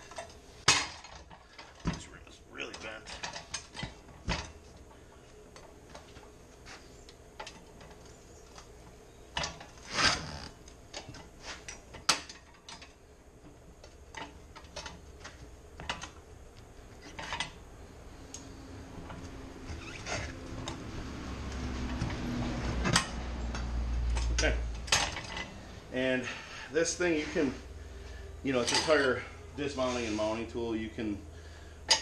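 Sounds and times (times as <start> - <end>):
tire bead breaker clanking: 18.9 - 25.6.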